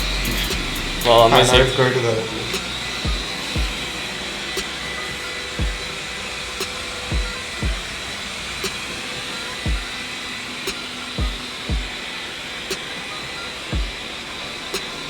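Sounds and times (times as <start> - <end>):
low thudding beat: 0.0 - 10.0, 10.7 - 12.0, 13.7 - 14.1.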